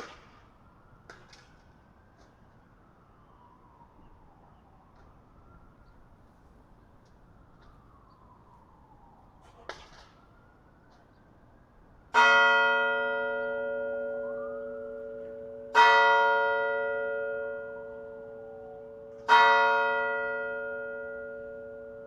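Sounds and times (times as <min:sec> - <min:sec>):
church bell tolling: 0:12.2 - 0:22.0.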